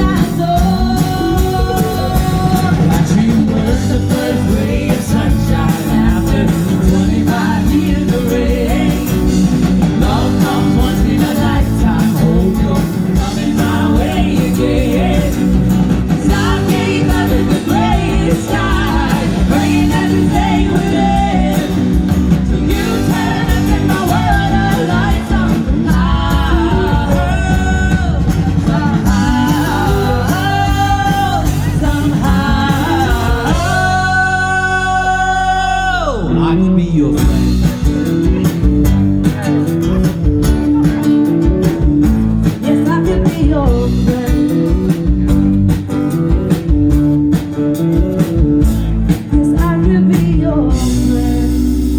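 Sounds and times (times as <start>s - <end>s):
sliding lead melody: 0.0s - 35.7s
live rock band playing: 0.0s - 51.9s.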